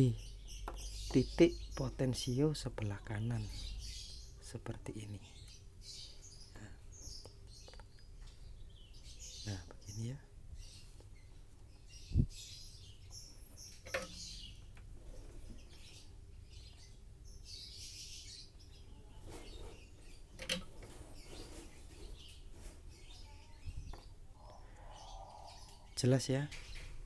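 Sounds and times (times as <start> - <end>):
birds chirping faintly: 0.0 - 27.0
handling knocks and clicks: 13.8 - 14.9, 20.4 - 21.1.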